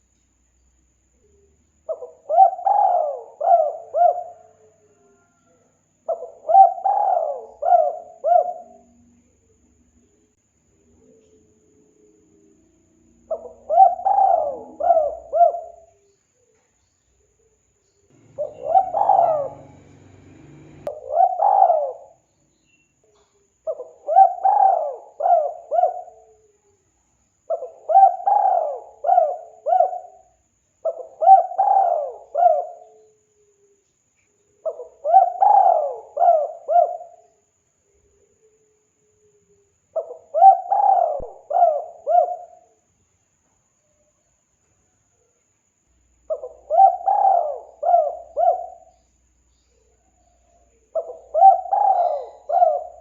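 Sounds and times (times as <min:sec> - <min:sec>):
dove cooing: 0:01.9 - 0:09.0, 0:13.2 - 0:16.0, 0:18.2 - 0:22.2, 0:23.7 - 0:26.5, 0:27.5 - 0:33.2, 0:34.6 - 0:37.3, 0:40.0 - 0:42.7, 0:46.3 - 0:49.0, 0:50.5 - 0:53.0.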